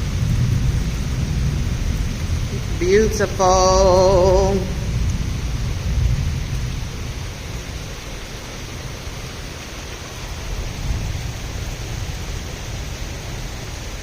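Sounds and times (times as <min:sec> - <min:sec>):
low rumble: 0:00.0 - 0:09.0
heavy rain hissing: 0:00.0 - 0:14.0.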